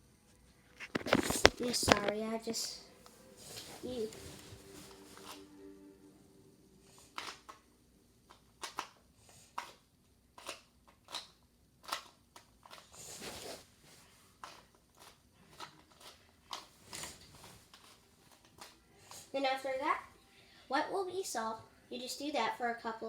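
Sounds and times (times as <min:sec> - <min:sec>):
puzzle cube plastic clicks: 0:00.8 - 0:02.2, 0:07.1 - 0:07.6, 0:08.3 - 0:13.0, 0:14.4 - 0:18.8
scraping rustle: 0:12.9 - 0:15.1.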